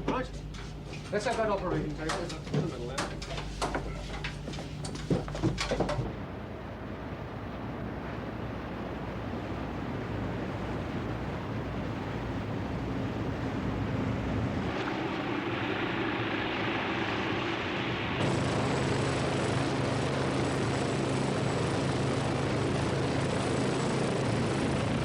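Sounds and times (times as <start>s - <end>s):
furniture knocking and clattering: 2.0s - 6.2s
ship rushing through wind and sea: 3.7s - 25.0s.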